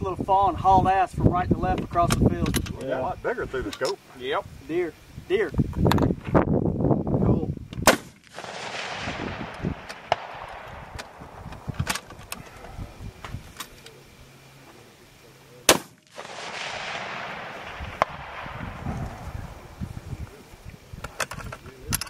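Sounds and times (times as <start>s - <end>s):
rifle shot echoing: 7.8s - 12.0s, 15.7s - 19.9s
faint sharp cracks: 7.8s - 12.4s.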